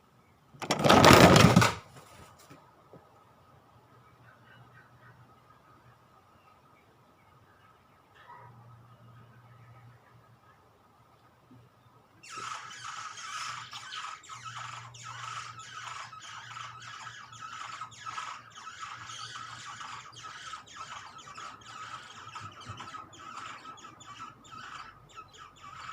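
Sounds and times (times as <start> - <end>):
nestlings begging calls: 12.2 - 25.9.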